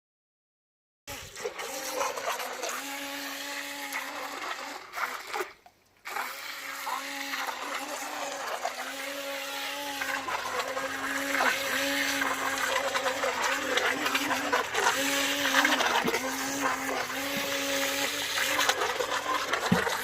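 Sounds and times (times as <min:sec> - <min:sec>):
electric boat motor whining: 0:01.1 - 0:05.5, 0:06.1 - 0:20.0.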